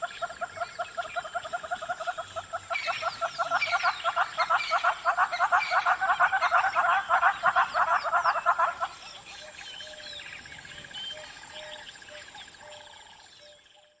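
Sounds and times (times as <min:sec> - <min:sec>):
hornbill cackling call: 0:01.4 - 0:10.0.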